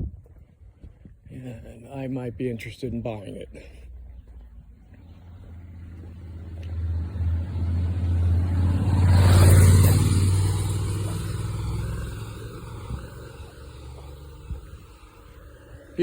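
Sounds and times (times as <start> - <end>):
car driving past: 3.9 - 16.0.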